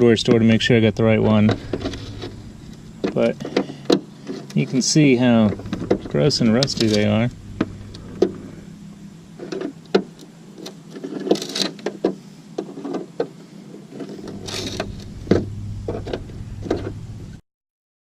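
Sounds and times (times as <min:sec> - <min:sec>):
steady low hum: 0:00.0 - 0:17.4
hissing scrapes: 0:01.3 - 0:09.9, 0:13.9 - 0:17.4.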